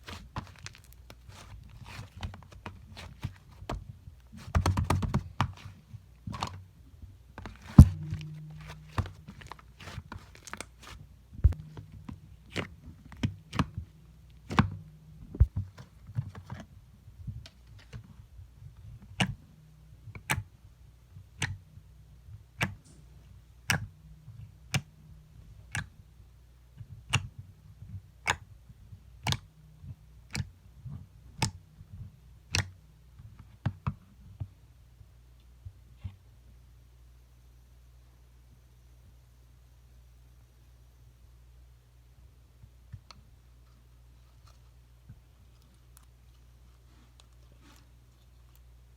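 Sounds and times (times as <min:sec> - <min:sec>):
low steady hum: 0:00.0 - 0:48.9.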